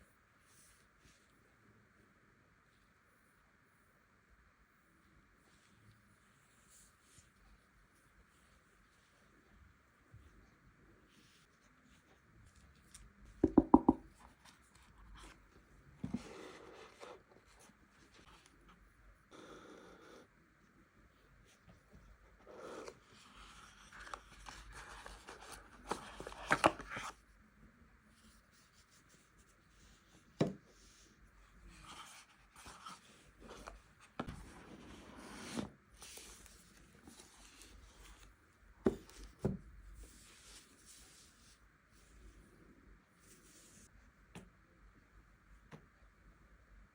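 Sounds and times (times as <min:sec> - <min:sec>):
sharp taps on phone: 0:13.4 - 0:14.0.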